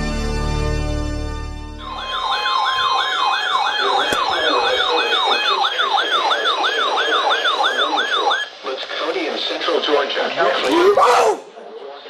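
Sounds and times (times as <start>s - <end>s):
electronic siren: 1.8s - 8.6s.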